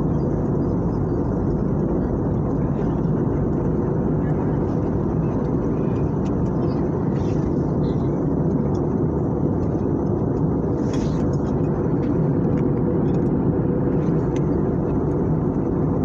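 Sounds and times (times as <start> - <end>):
jet engine roar: 0.0 - 16.0.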